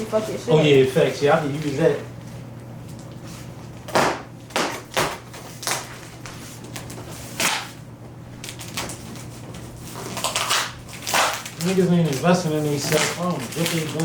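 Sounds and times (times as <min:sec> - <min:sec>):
packaging rustling: 0:08.4 - 0:14.0.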